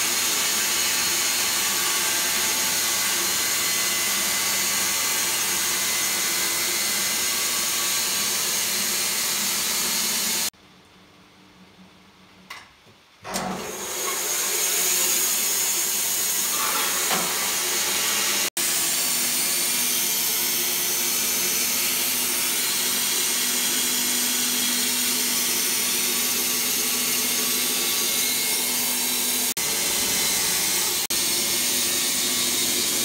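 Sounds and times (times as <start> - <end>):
sawmill motor hum: 0.0 - 10.5, 13.4 - 33.0
band saw blade cutting log: 14.0 - 33.0.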